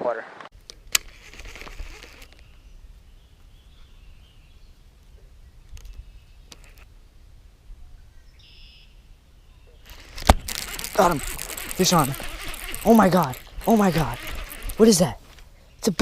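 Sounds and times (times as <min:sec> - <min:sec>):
bird chirp: 0:02.2 - 0:06.9, 0:07.8 - 0:10.2, 0:10.8 - 0:16.0
faint clicks: 0:05.0 - 0:06.9.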